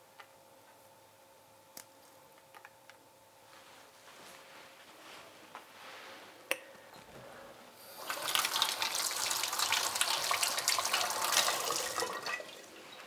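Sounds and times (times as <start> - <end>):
water splashing into a sink: 7.9 - 12.8.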